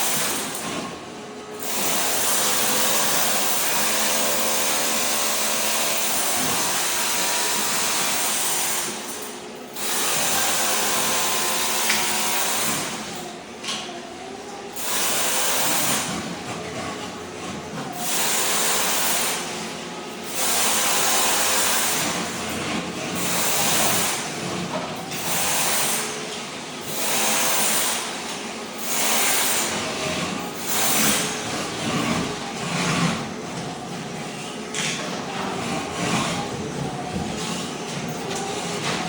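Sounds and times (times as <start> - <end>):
floor scraper blade scraping mortar: 1.6 - 9.1, 14.8 - 19.5, 20.2 - 39.0.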